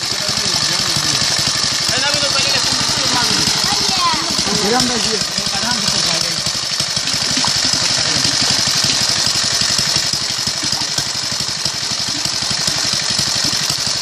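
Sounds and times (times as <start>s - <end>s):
small engine chugging: 0.0s - 14.0s.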